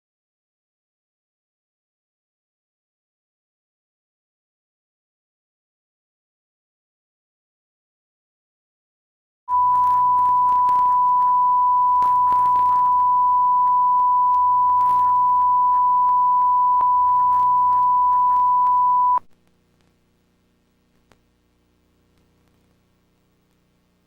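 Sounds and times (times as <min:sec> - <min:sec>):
electronic sine tone: 0:09.5 - 0:19.3
low hum: 0:09.5 - 0:19.3
faint crackles: 0:09.5 - 0:24.0.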